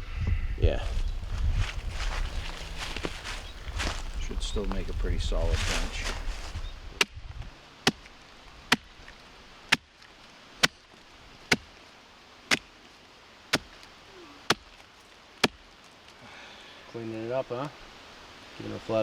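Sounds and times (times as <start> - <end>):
axe chopping log: 7.8 - 9.1, 9.7 - 10.8, 11.5 - 11.8, 12.5 - 12.7, 13.5 - 13.9, 14.5 - 14.8, 15.4 - 15.6.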